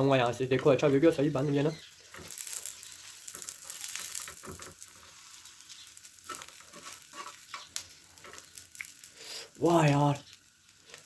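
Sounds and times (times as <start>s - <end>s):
food sizzling in hot oil: 0.0s - 11.0s
utensil tapping and scraping pan: 0.4s - 5.2s, 6.2s - 8.5s.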